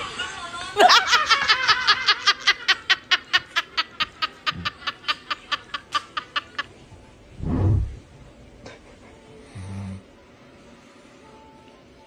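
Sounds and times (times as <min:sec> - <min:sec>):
loud low rumble: 0:07.3 - 0:08.2.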